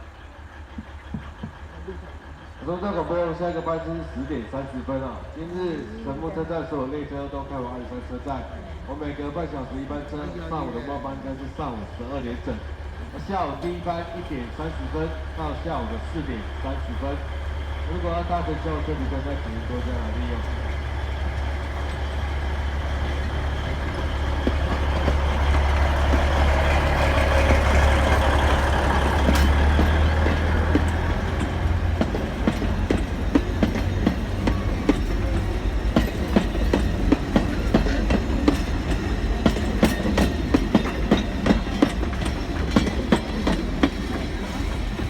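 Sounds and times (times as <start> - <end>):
diesel locomotive engine drone: 0.0 - 45.0
train wheel clicks on rails: 0.5 - 2.9, 12.3 - 45.0.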